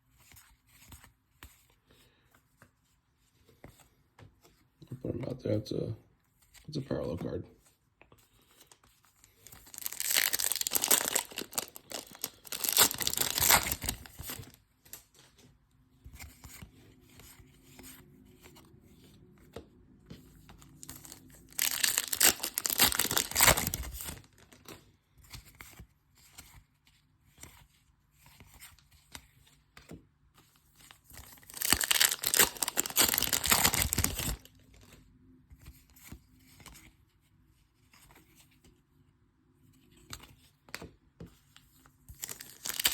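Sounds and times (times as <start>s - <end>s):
foil wrappers tearing and crinkling: 9.4s - 14.6s, 20.8s - 24.6s, 31.3s - 34.5s, 42.1s - 42.9s.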